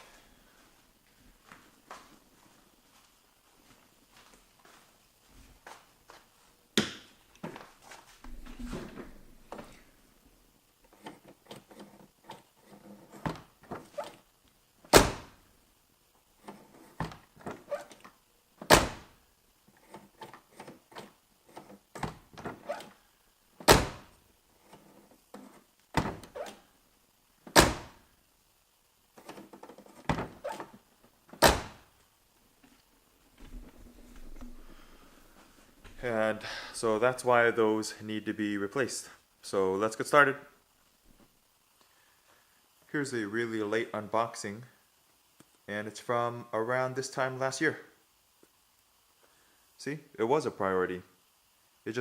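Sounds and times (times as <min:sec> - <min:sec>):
car door thunking shut: 0:14.9 - 0:15.3.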